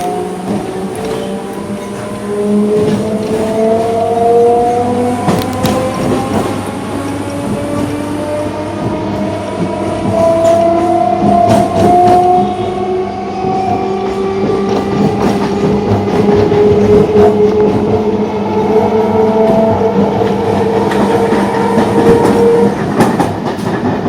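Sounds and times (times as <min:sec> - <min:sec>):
wheels clicking on rails: 0:00.0 - 0:07.9.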